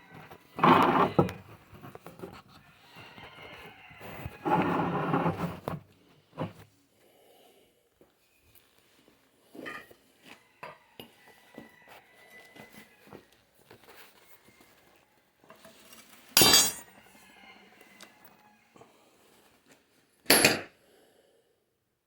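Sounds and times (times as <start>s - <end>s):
metal tools clinking: 16.4s - 16.9s.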